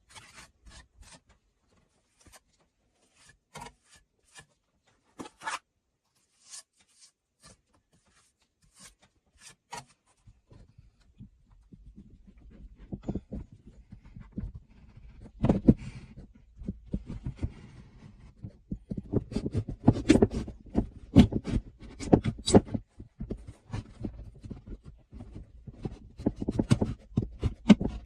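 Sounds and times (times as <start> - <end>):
knocks taps and scrapes: 6.5 - 28.0.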